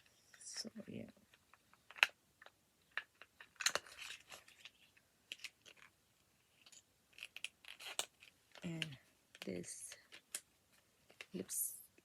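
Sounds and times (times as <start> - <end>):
packaging crinkle: 3.0 - 5.9.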